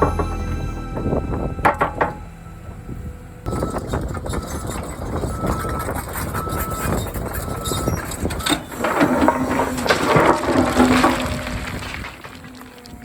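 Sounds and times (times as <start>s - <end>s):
excavator engine and hydraulics: 0.0s - 9.9s
wind noise on microphone: 0.0s - 13.0s.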